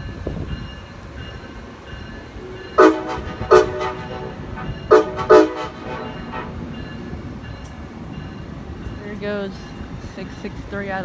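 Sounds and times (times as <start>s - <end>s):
locomotive air horn toots: 2.7s - 6.7s.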